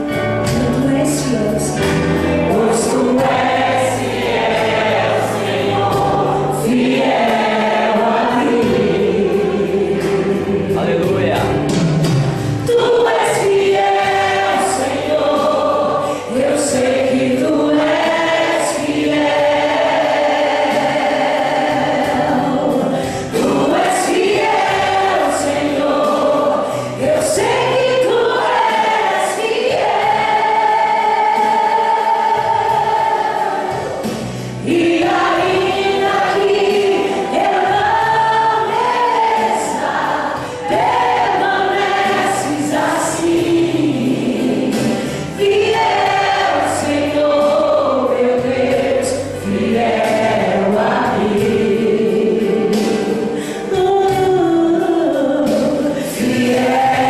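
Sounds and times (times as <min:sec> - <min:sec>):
church choir singing a hymn: 0:00.0 - 0:57.0.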